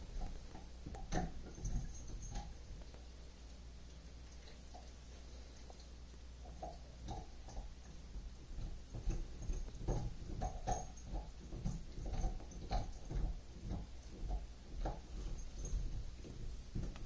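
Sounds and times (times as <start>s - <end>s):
low steady hum: 0.0s - 17.0s
soft knocks and rustles of handling: 8.6s - 17.0s.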